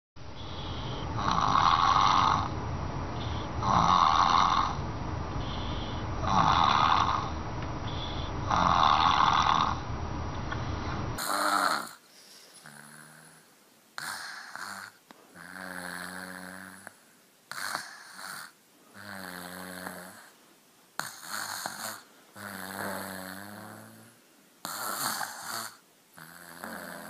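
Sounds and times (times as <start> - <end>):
loud snoring: 0.4 - 2.5, 3.2 - 4.8, 5.4 - 9.8, 11.2 - 20.4, 21.0 - 27.0.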